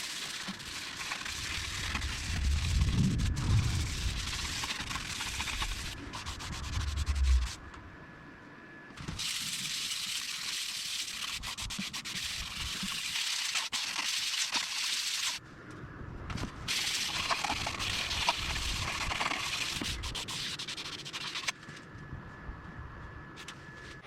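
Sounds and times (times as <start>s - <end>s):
sandpaper on spinning wood: 0.0s - 7.6s, 9.1s - 15.4s, 16.7s - 21.5s.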